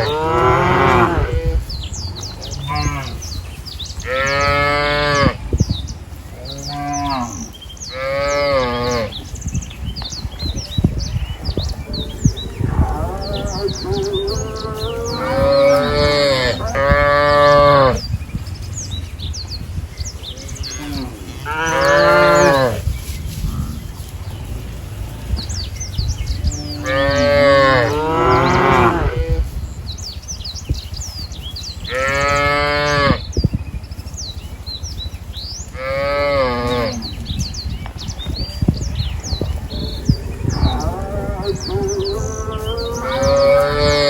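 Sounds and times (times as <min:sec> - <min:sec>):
cattle mooing: 0:00.0 - 0:01.7, 0:12.1 - 0:18.0, 0:20.4 - 0:22.8, 0:26.4 - 0:29.5, 0:35.8 - 0:37.3, 0:40.2 - 0:44.0
small birds chirping: 0:00.0 - 0:44.0.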